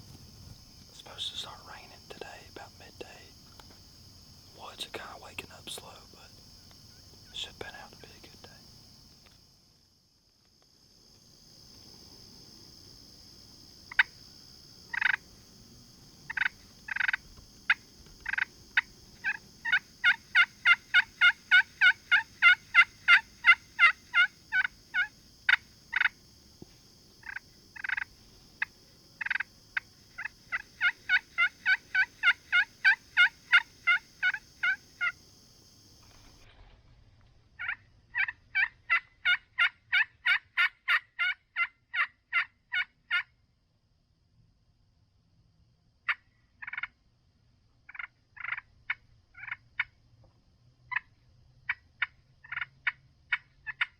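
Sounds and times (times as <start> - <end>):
high insect drone: 0.0 - 36.4
turkey yelps: 37.6 - 43.2.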